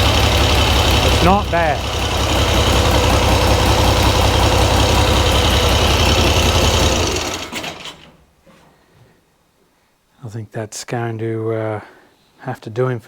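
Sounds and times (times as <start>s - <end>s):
motorcycle engine idling: 0.0s - 8.2s.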